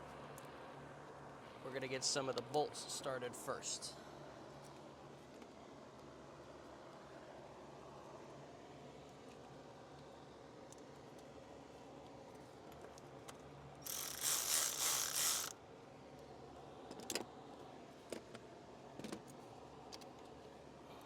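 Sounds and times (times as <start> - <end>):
metal tools clicking: 13.8 - 15.5
ratchet rattling: 13.8 - 15.5.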